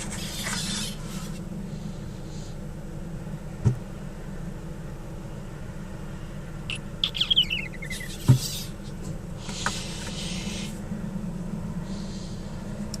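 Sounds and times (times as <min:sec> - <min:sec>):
steady low hum: 0:00.0 - 0:13.0
gecko chirps: 0:06.7 - 0:08.7
breathy hiss: 0:09.4 - 0:10.9, 0:11.8 - 0:12.7.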